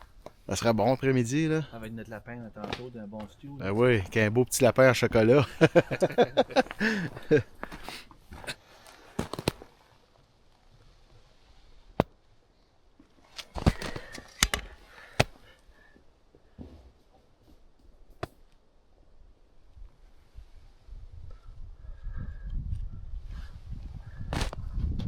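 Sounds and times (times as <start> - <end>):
dry wood snapping: 2.6 - 3.4, 8.4 - 9.8, 13.0 - 15.6.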